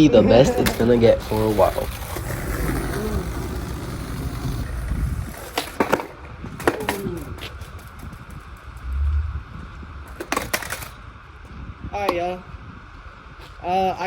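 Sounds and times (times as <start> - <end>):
skateboard wheels rolling on pavement: 0.0 - 14.0
skateboard clacks: 0.4 - 8.8, 10.1 - 11.0.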